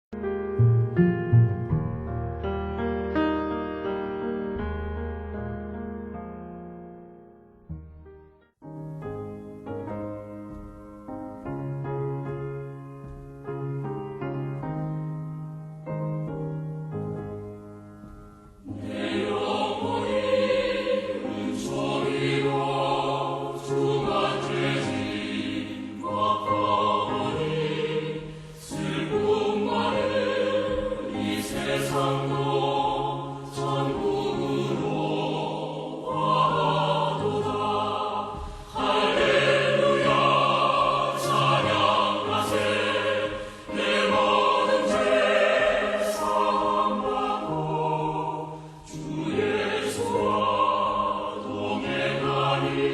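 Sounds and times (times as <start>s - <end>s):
choir singing: 18.6s - 52.9s.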